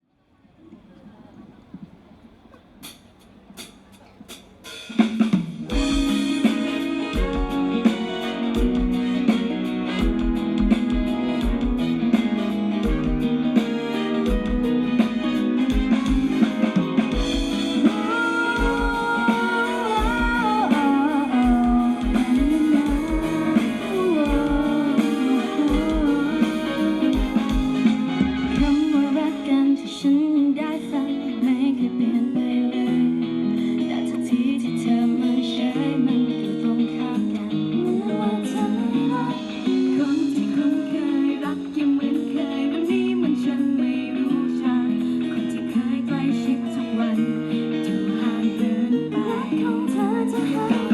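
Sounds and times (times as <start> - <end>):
live pop band music: 1.7 - 50.9
guitar: 3.6 - 50.9
kick drum beat: 10.0 - 12.1, 12.8 - 13.4, 14.3 - 14.8, 15.7 - 16.4.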